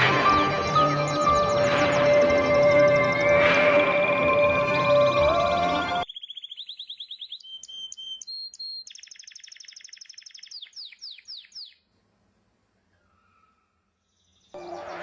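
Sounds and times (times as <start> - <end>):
songbird singing trills: 6.0 - 11.8.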